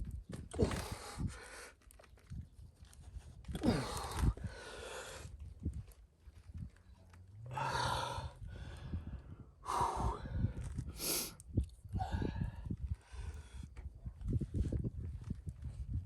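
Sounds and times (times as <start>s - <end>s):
man breathing hard: 3.6s - 5.4s, 7.5s - 13.7s.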